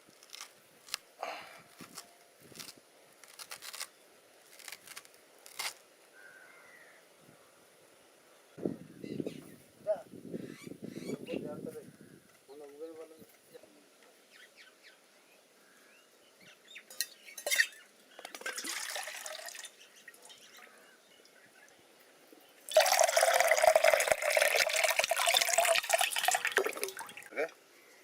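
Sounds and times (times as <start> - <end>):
water pouring: 18.3 - 20.5, 22.7 - 27.3
water splashing: 22.7 - 27.5.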